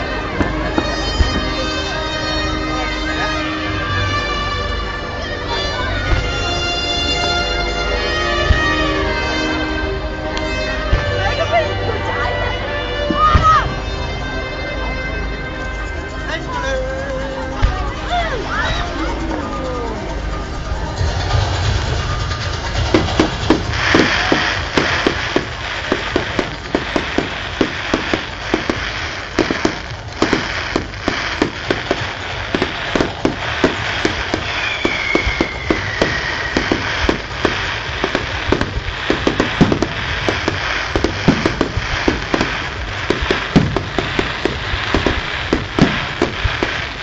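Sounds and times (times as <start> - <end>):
firework falling whistle: 0.0 - 12.3, 21.0 - 47.0
fireworks bangs and crackles: 0.0 - 47.0
low rumble: 13.6 - 47.0.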